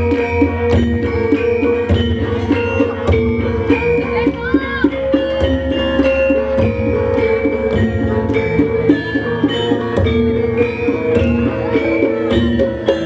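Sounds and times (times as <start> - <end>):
hand drum strokes: 0.0 - 13.0
metallophones ringing: 0.0 - 13.0.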